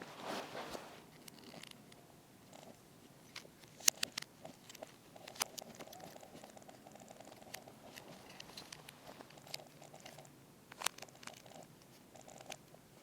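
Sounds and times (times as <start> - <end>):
plastic toy clicking and rattling: 1.2 - 1.8, 3.3 - 12.7.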